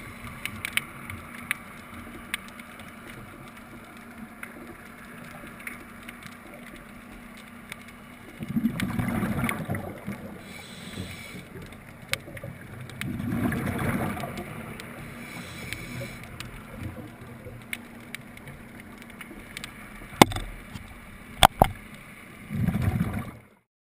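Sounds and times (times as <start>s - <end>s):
regulator bubbles rushing: 8.4s - 10.5s, 12.4s - 14.9s, 22.5s - 23.6s
underwater hiss: 8.6s - 11.7s, 13.2s - 16.8s.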